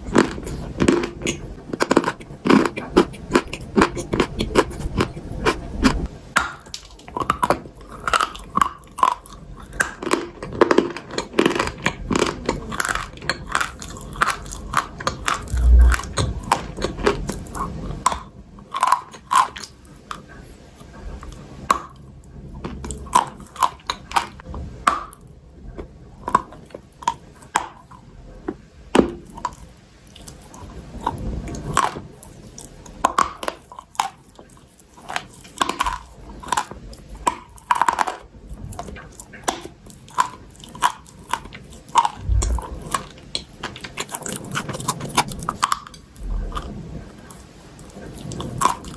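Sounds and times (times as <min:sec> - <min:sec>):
crunchy chewing: 0:00.0 - 0:28.5, 0:29.2 - 0:48.9
dull low thump: 0:15.5 - 0:16.0, 0:42.2 - 0:42.8.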